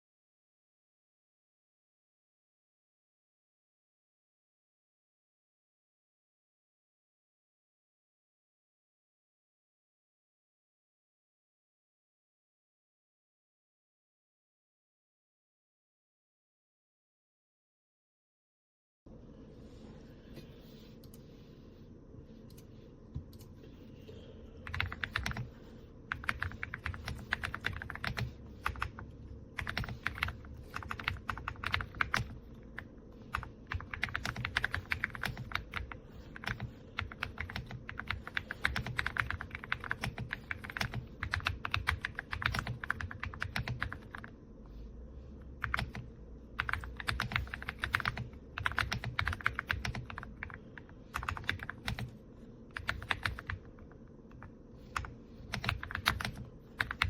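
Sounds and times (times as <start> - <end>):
mechanical keyboard typing: 24.6 - 25.5, 26.1 - 29.0, 29.6 - 44.3, 45.6 - 57.0.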